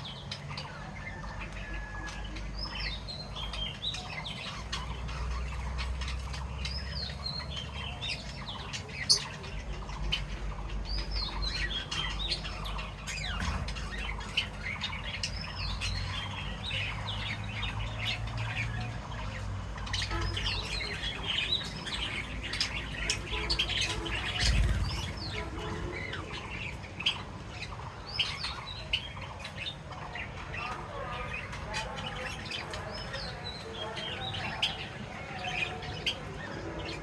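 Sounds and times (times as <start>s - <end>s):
caged birds chirping: 0.0s - 37.0s.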